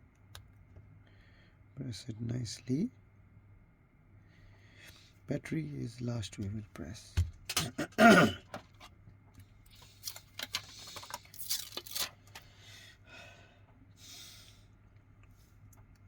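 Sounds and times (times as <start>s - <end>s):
faint low hum: 0.0s - 16.0s
small parts and tools clicking: 9.7s - 12.5s.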